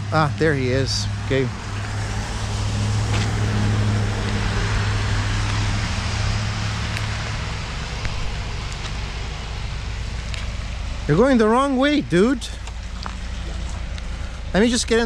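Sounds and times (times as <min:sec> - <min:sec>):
car engine running: 0:00.0 - 0:15.0
rain hissing: 0:00.8 - 0:11.8.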